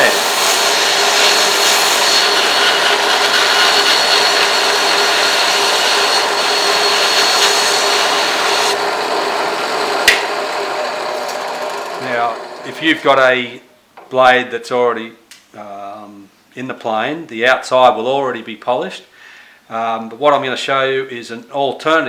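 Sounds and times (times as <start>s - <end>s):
belt sander hissing and whining: 0.0s - 13.3s
sharp click: 10.1s - 10.3s.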